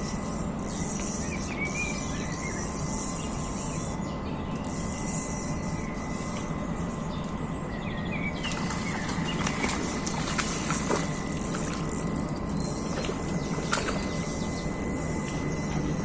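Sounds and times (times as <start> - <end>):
thin high whine: 0.0 - 16.0
birds chirping: 7.1 - 16.0.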